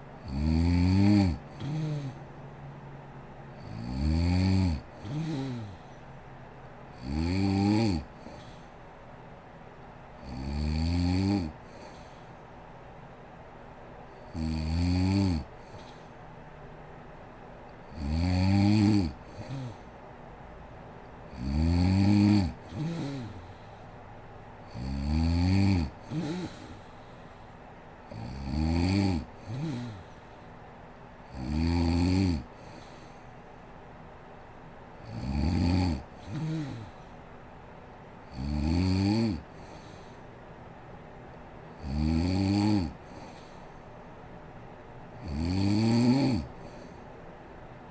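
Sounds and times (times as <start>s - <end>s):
woman snoring: 0.2s - 2.2s, 3.6s - 5.9s, 7.0s - 8.6s, 10.2s - 12.2s, 14.3s - 16.0s, 17.9s - 19.9s, 21.3s - 23.7s, 24.7s - 27.0s, 28.1s - 30.2s, 31.3s - 33.0s, 35.0s - 37.1s, 38.3s - 40.2s, 41.8s - 43.5s, 45.2s - 47.0s
short quiet snort: 22.2s - 23.8s, 26.0s - 27.3s, 29.4s - 30.3s, 36.2s - 37.1s.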